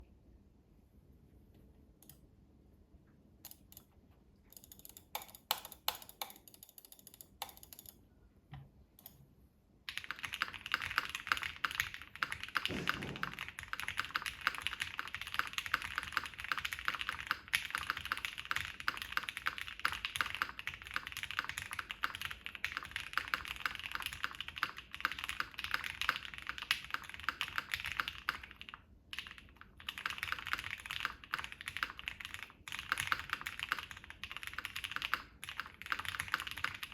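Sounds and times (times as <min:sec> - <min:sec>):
mechanical keyboard typing: 0:04.5 - 0:08.0, 0:09.9 - 0:36.9.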